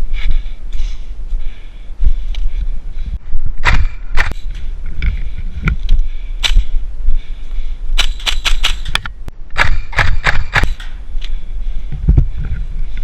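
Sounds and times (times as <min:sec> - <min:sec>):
airsoft guns firing: 0:08.0 - 0:09.0, 0:09.6 - 0:11.0.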